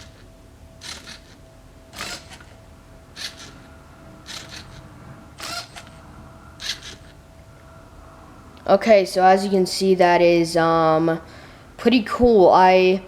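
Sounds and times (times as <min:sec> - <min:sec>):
servo motors whirring: 0:00.0 - 0:06.0, 0:06.6 - 0:07.2
faint steady whine: 0:00.0 - 0:13.0.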